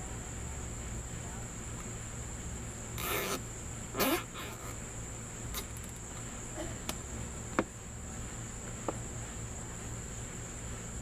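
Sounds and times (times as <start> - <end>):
cricket trill: 0.0 - 11.0
zip tie clicks: 3.0 - 3.4
zip ties rasping tight: 3.0 - 3.4.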